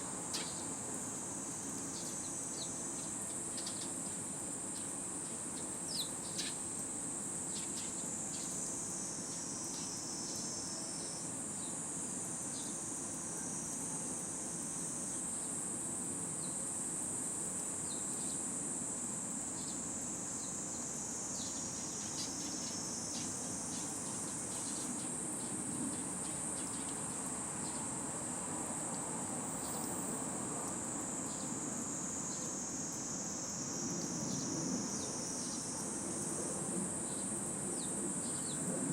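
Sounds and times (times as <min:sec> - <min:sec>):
faint short insect chirps: 0:28.9 - 0:30.2.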